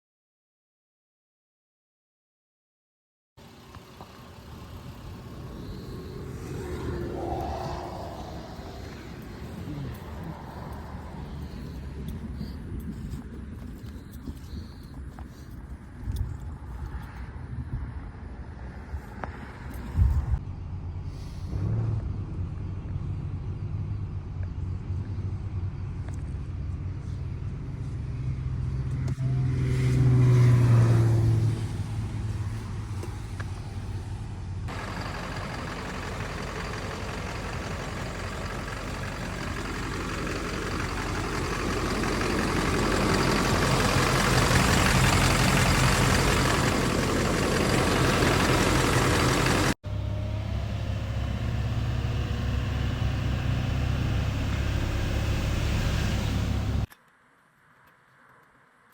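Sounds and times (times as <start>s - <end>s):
diesel engine revving: 3.4s - 13.2s, 20.6s - 56.9s
broad rushing noise: 5.2s - 12.0s.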